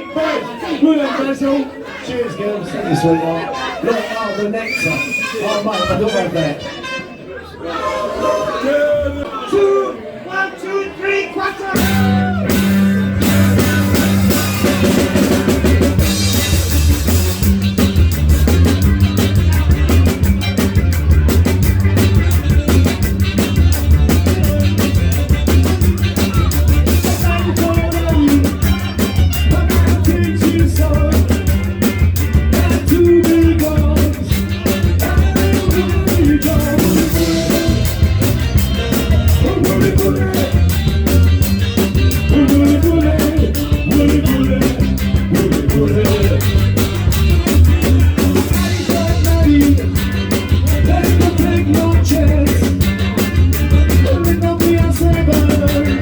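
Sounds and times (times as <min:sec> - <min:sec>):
drum kit: 0:11.8 - 0:56.0
live band playing soul music: 0:11.8 - 0:56.0.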